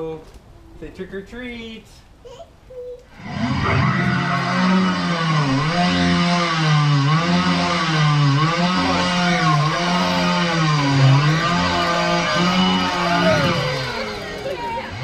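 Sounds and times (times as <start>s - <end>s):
chainsaw revving: 3.1s - 15.0s.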